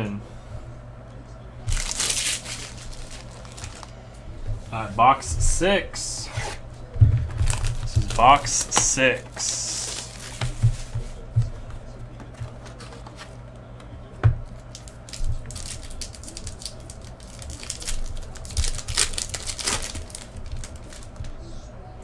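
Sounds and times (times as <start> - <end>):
wrapper and cardboard tearing: 1.7 - 4.0, 7.4 - 10.5, 14.6 - 21.3.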